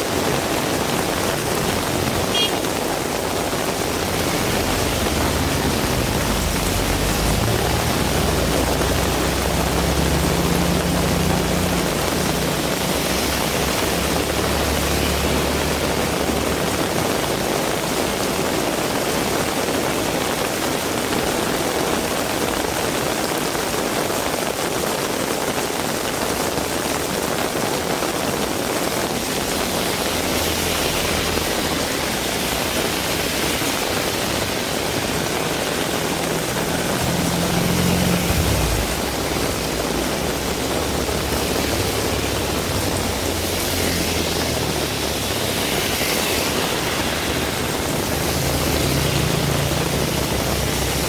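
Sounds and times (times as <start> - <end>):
heavy rain pouring: 0.0 - 51.0
vehicle engine humming: 0.5 - 17.6, 28.6 - 51.0.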